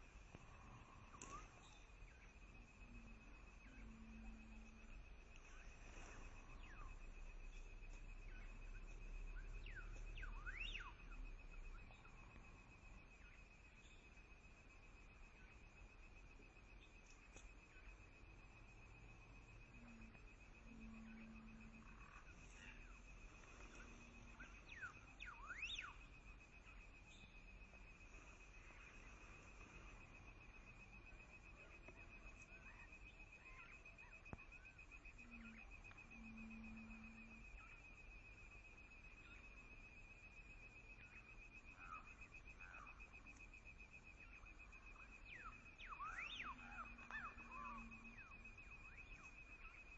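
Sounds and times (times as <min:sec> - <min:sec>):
faint bird calls: 0:00.0 - 0:14.2, 0:16.8 - 0:40.0, 0:40.7 - 0:49.9
insect trill: 0:00.0 - 0:49.9
bird whistling: 0:24.4 - 0:26.0.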